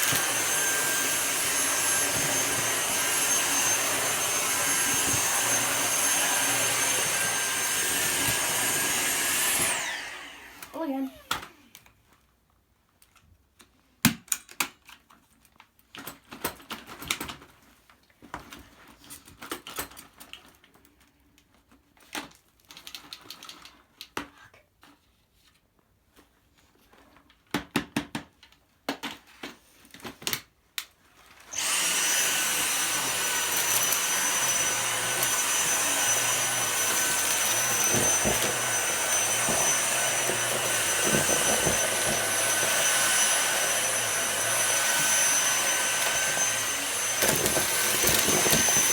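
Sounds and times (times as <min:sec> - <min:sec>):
vacuum motor whining: 0:00.0 - 0:11.5, 0:31.5 - 0:48.9
vacuum cleaner knocks and rattles: 0:31.6 - 0:45.4, 0:46.0 - 0:48.9.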